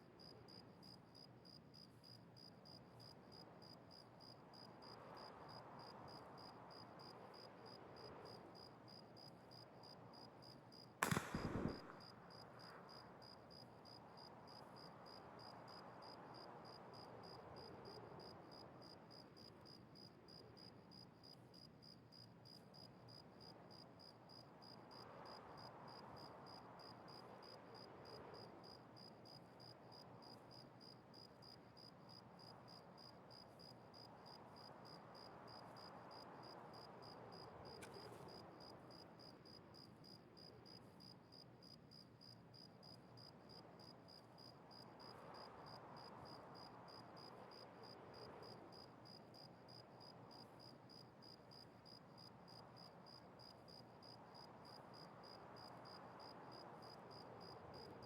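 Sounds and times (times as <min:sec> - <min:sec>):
crickets chirping: 0:00.0 - 0:58.0
pistol shot: 0:11.0 - 0:12.5.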